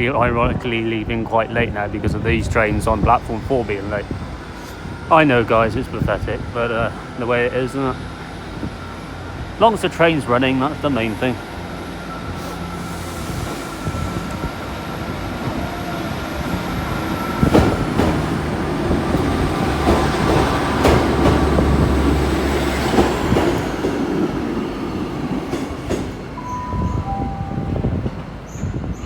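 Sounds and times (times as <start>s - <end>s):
train wheels clacking over rail joints: 17.4s - 24.6s.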